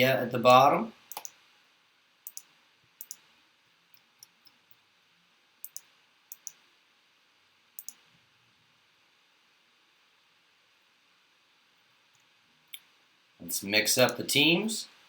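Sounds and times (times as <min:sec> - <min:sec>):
computer mouse clicks: 0:01.1 - 0:01.4, 0:02.2 - 0:03.2, 0:05.6 - 0:06.6, 0:07.8 - 0:08.0.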